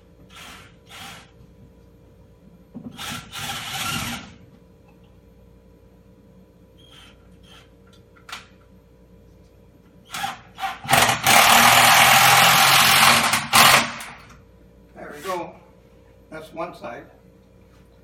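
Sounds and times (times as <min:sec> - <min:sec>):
electric drill driving screw into wood: 0:00.3 - 0:01.3, 0:02.9 - 0:04.4, 0:10.1 - 0:14.2.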